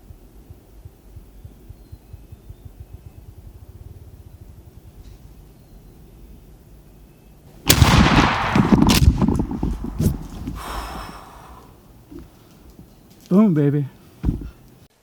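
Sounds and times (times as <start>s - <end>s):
shotgun blast: 7.7s - 11.0s
loud rustling and knocking: 8.0s - 10.9s.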